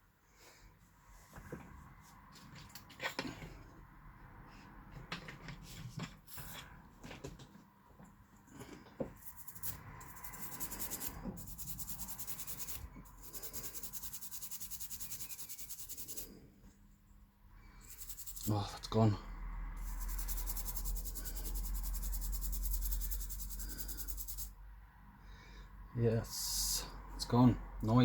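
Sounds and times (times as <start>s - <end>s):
toothbrush scrubbing circuit board: 9.2s - 16.3s, 17.8s - 18.8s, 19.8s - 24.5s.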